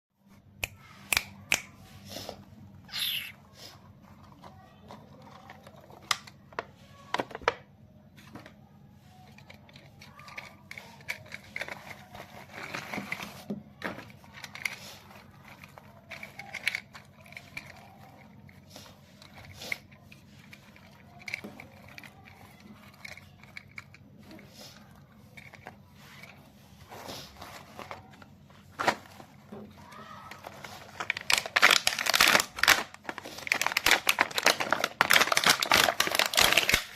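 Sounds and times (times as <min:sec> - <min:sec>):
packaging rustle: 0:24.7 - 0:36.9.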